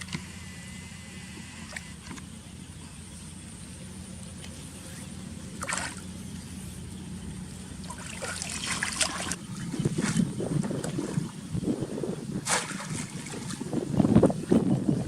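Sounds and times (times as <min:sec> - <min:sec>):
low hum: 0:00.0 - 0:15.0
water splashing and sloshing: 0:04.0 - 0:15.0.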